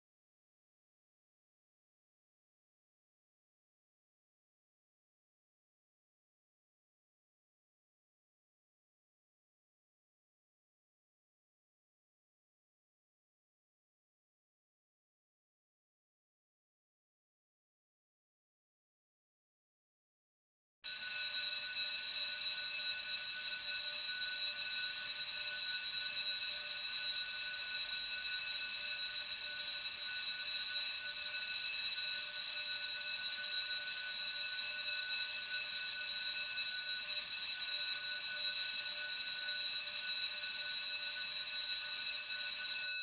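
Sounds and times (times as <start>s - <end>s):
electric school bell ringing: 20.9s - 26.5s, 40.4s - 43.0s.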